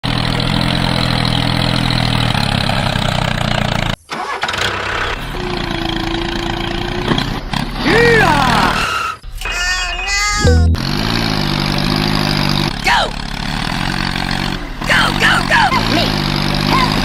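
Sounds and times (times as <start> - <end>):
held tone: 10.4 - 11.1
small engine running: 10.9 - 17.0.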